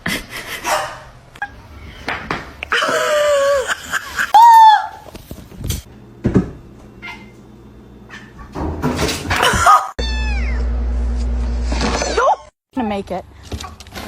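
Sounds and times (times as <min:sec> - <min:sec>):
cat meowing: 0:10.0 - 0:10.7.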